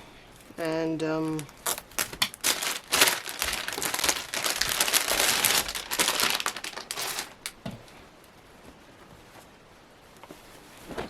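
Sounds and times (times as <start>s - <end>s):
fabric rustling: 0.5s - 11.0s
velcro rasping: 1.4s - 7.5s.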